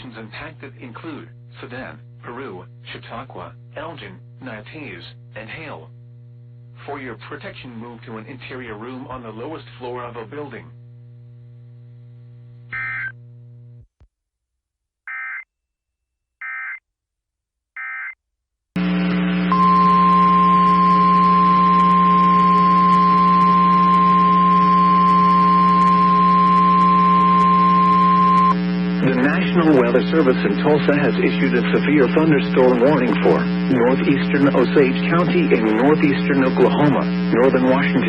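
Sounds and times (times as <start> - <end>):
buzzing hum with static: 0.0 - 13.9, 18.8 - 38.0
steady single-pitch alert tone: 18.8 - 29.9.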